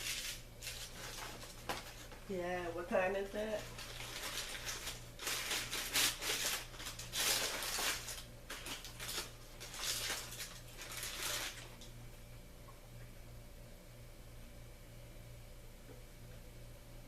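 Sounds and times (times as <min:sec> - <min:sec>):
food packaging rustling: 0:00.0 - 0:02.3, 0:03.5 - 0:11.9.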